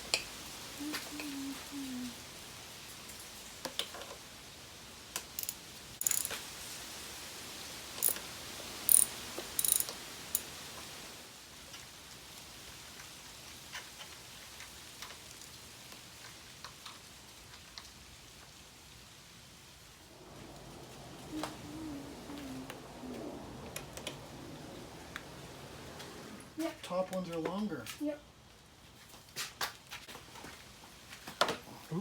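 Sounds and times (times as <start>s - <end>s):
metallic clicks and clinks of tools: 5.2s - 6.4s, 8.0s - 8.3s, 8.9s - 10.5s.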